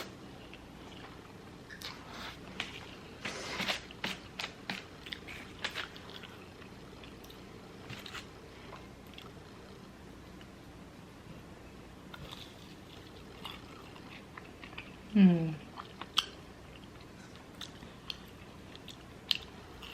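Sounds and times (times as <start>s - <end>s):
person chewing food: 0.0s - 10.6s, 12.1s - 19.9s.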